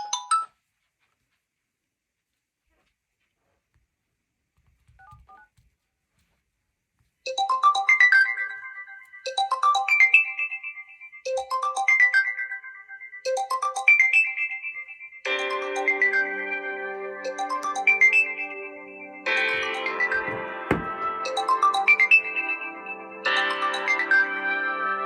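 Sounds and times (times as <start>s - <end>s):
smartphone ringtone: 7.3s - 12.7s.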